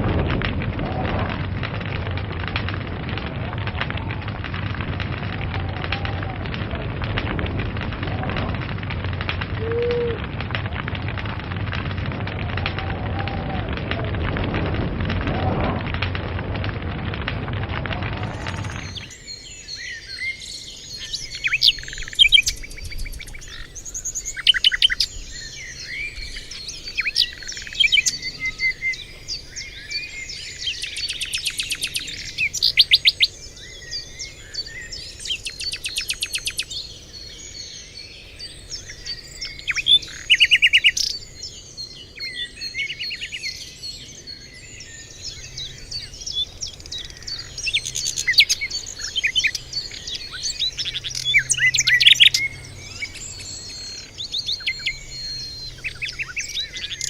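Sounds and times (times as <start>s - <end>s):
fire crackling: 0.0s - 57.0s
birds chirping and singing: 17.8s - 57.0s.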